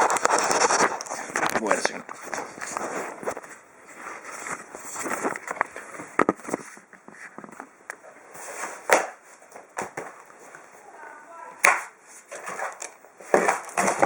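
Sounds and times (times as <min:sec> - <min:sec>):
cardboard parcel rustling: 0:00.0 - 0:10.5, 0:12.0 - 0:14.0.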